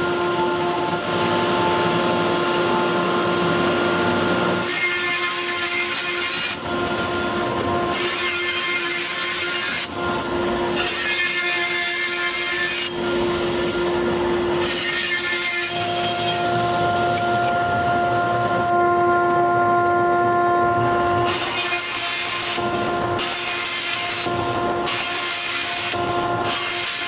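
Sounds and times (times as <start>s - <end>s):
saw cutting wood: 0.0s - 18.8s, 21.2s - 27.0s
power saw whining: 0.0s - 19.1s.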